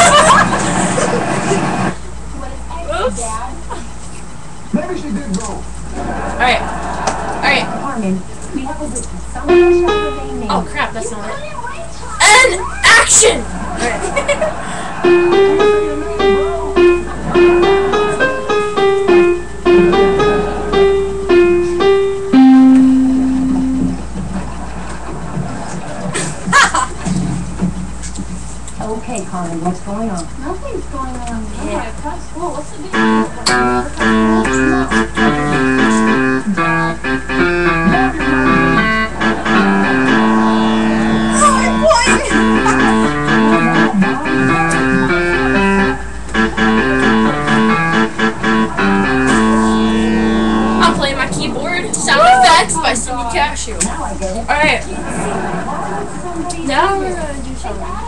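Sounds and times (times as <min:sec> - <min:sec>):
electronic keyboard melody: 0:09.4 - 0:10.9, 0:15.0 - 0:24.3, 0:32.9 - 0:52.1.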